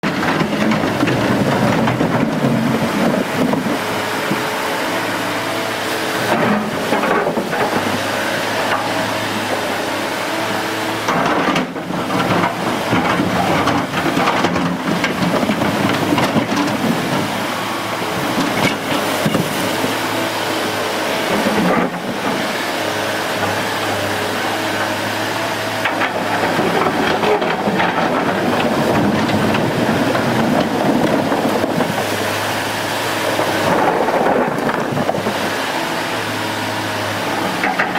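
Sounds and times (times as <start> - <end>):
heavy machinery engines running: 0.0 - 37.9.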